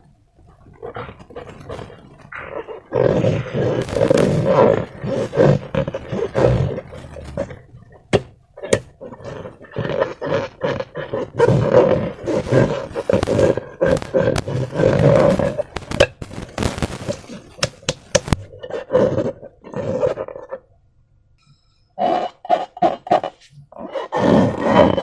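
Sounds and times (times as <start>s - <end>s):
slime squelching: 0.0s - 20.7s
rubber balloon squeaking: 1.0s - 18.6s
sharp clicks: 3.8s - 7.4s, 12.2s - 18.5s.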